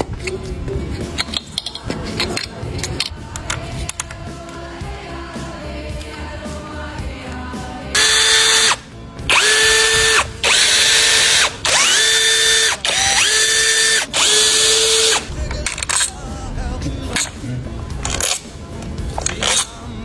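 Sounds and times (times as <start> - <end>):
background music: 0.0 - 20.0
power drill whining: 8.0 - 16.1, 19.2 - 19.8.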